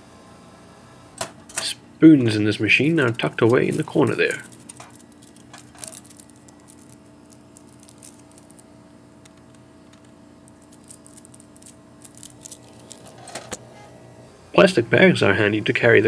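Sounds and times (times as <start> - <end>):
vending machines humming: 0.0 - 16.0.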